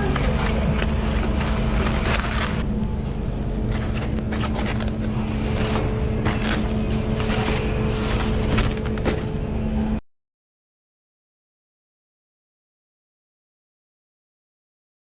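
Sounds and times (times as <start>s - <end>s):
kitchen equipment humming: 0.0s - 10.0s.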